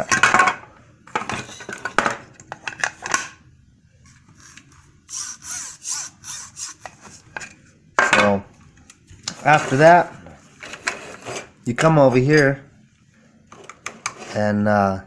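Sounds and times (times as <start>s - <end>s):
plastic toy rubbing and scraping: 4.0s - 7.6s, 9.3s - 11.6s.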